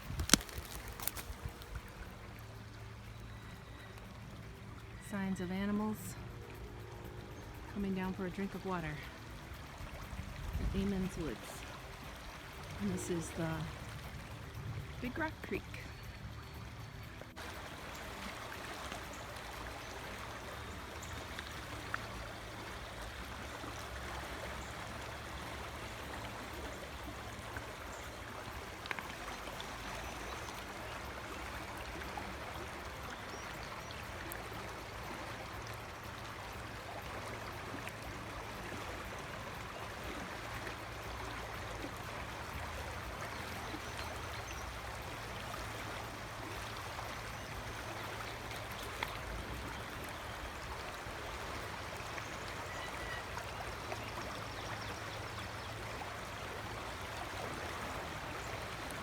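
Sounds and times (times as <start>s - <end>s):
creek rushing over rocks: 0.0s - 2.4s, 17.4s - 59.0s.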